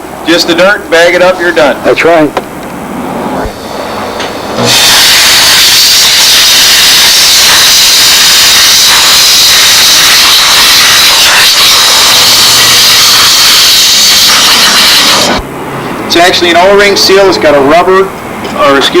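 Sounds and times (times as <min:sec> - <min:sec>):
steam cleaner hissing: 0:03.5 - 0:15.4.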